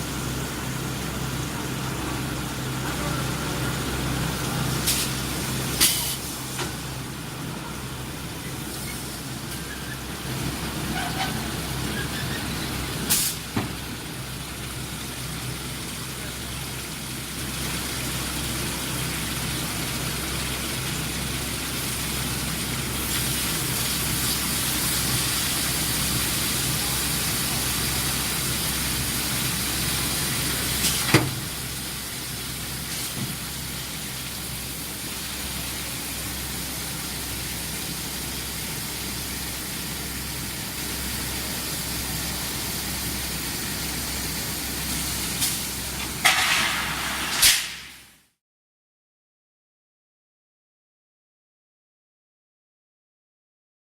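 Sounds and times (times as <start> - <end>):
hiss: 4.7 - 6.7, 13.0 - 13.6, 22.9 - 34.3, 41.4 - 48.2.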